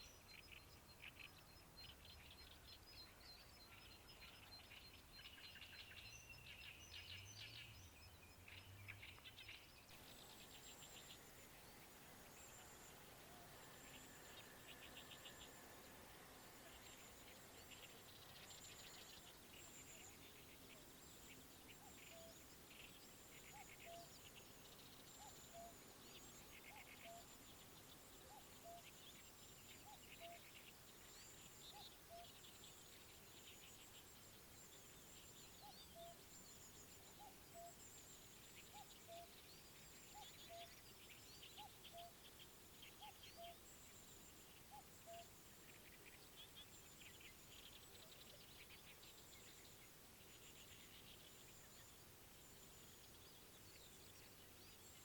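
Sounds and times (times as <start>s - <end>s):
rapid chattering birdsong: 0.0s - 37.8s.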